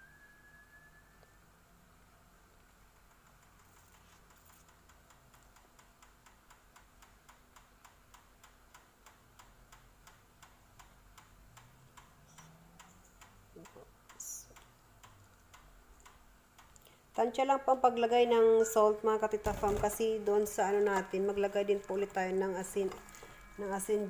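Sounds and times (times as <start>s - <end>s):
faint light ticking: 2.6s - 17.2s.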